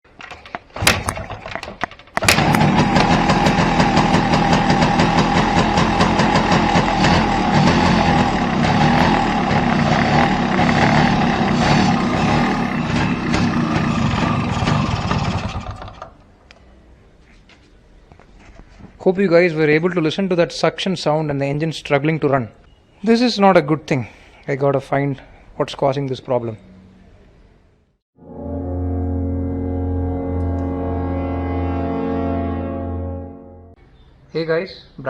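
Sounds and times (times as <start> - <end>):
two-stroke engine struggling: 0.7 - 16.2.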